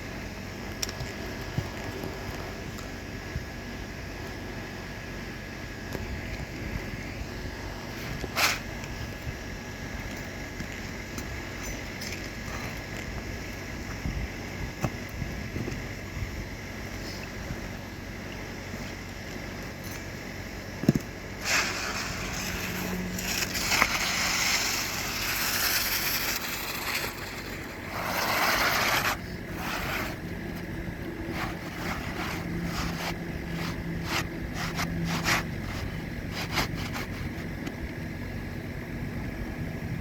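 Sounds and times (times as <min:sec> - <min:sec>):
shingles scraping and crackling: 0:20.9 - 0:37.5.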